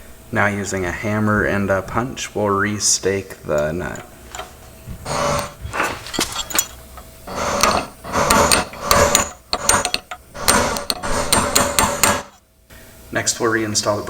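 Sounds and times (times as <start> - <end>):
hammer striking metal punch: 7.3 - 12.4.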